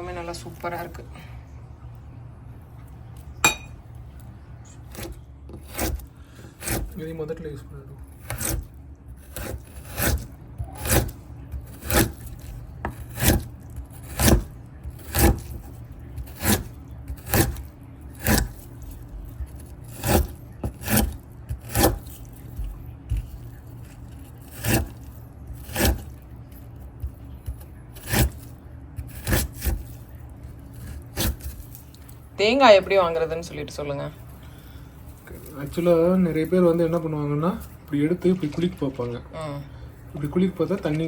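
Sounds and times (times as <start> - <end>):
knife scraping coconut: 4.7 - 32.2, 34.6 - 39.1.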